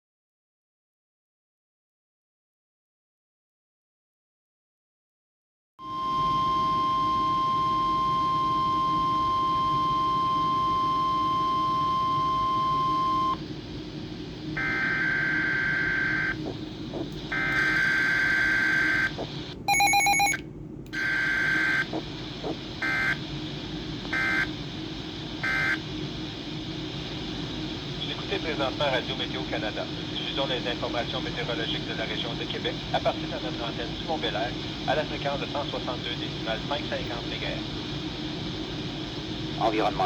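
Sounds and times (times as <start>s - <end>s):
steady warning tone: 5.8s - 20.4s, 21.0s - 25.9s
radio hiss: 13.2s - 19.6s, 21.0s - 40.0s
multi-tone beep: 19.7s - 20.4s.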